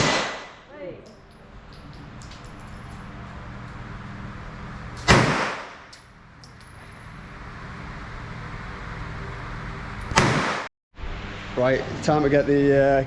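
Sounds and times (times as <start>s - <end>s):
gunshots with echo: 0.0s - 0.6s, 5.1s - 5.8s, 10.2s - 10.7s.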